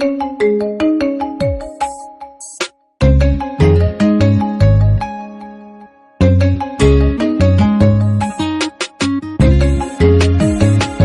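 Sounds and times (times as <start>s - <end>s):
smartphone ringtone melody: 0.0s - 8.8s, 9.4s - 11.0s
heavy bass notes: 3.0s - 5.0s, 6.2s - 8.4s, 9.4s - 11.0s.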